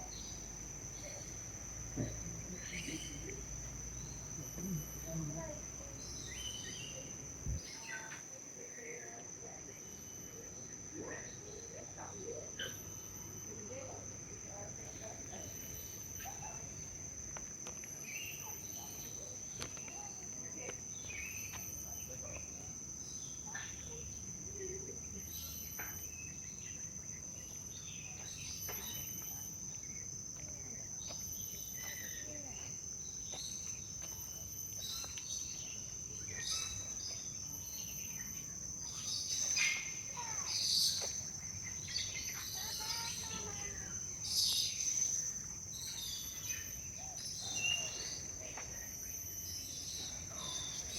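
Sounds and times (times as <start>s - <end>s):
high-pitched insect drone: 0.0s - 50.9s
pulsing insect trill: 0.0s - 50.9s
bird chirps and calls: 4.2s - 8.2s, 34.7s - 50.9s.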